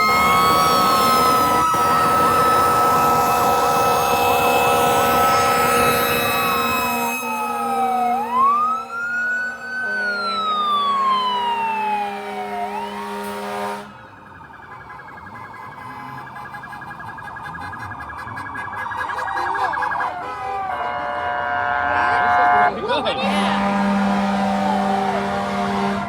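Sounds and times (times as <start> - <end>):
electronic siren wailing: 0.0 - 26.0.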